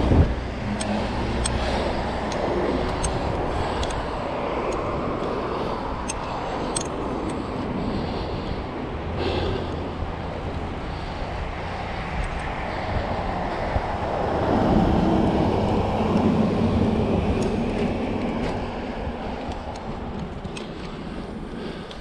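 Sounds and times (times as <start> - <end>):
rumble of road traffic: 0.0 - 22.0
vehicle engine passing: 9.4 - 19.2.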